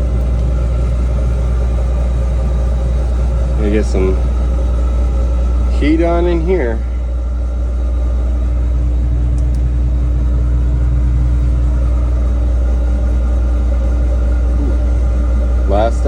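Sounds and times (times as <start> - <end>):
cab heater running: 0.0 - 16.0
diesel engine idling: 0.0 - 16.0.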